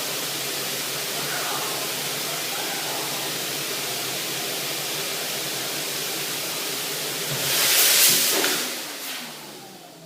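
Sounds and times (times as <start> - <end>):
clothes dryer running: 0.0 - 10.0.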